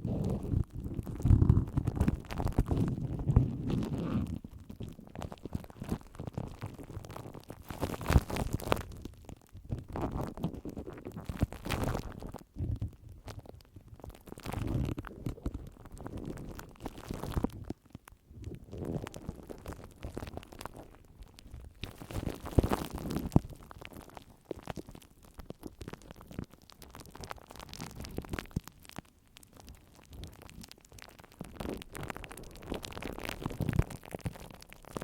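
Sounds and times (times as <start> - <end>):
scratching and rubbing: 0.0 - 8.7.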